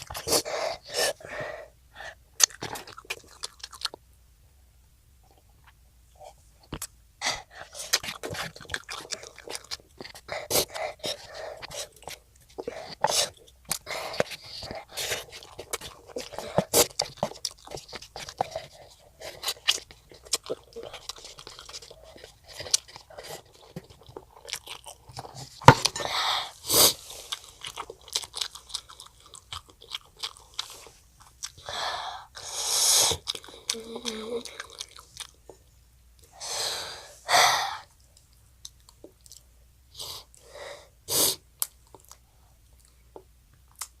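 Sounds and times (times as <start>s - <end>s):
child chewing food: 0.0s - 4.2s, 5.1s - 44.0s
child sniffing: 26.0s - 27.3s, 31.7s - 33.2s, 36.4s - 37.9s, 40.0s - 41.4s.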